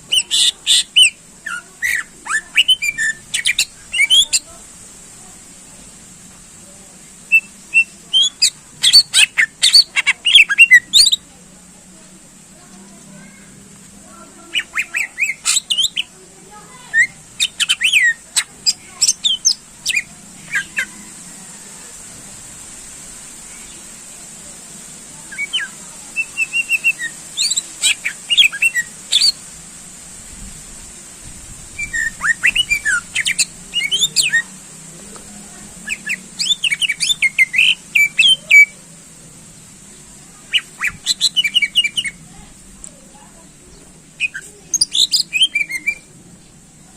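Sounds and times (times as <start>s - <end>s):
faint steady hiss: 0.0s - 46.9s
bird singing sharp chattering notes: 0.1s - 4.5s, 7.3s - 11.2s, 14.3s - 21.0s, 25.3s - 29.4s, 31.8s - 34.5s, 35.8s - 38.7s, 40.5s - 42.2s, 43.6s - 46.6s.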